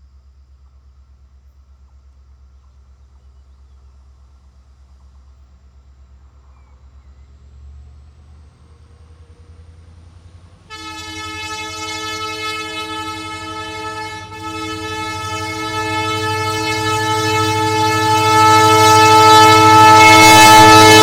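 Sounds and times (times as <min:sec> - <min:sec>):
diesel locomotive engine throbbing: 0:00.2 - 0:21.0
locomotive horn blast: 0:10.7 - 0:21.0.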